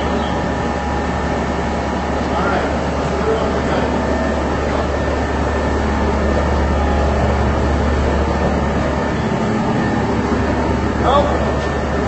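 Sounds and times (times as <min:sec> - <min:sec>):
machinery drone: 0:00.0 - 0:12.0.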